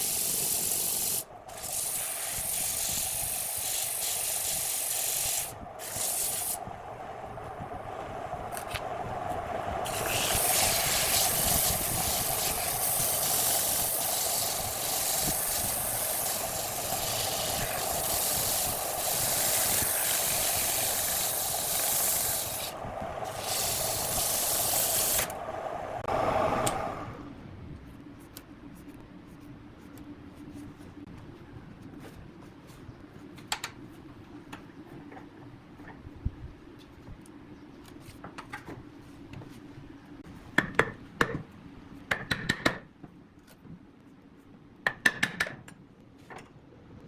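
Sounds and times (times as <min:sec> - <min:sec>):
sandpaper hissing on spinning wood: 0:00.0 - 0:07.2, 0:09.2 - 0:26.1
lathe running hum: 0:05.8 - 0:27.3.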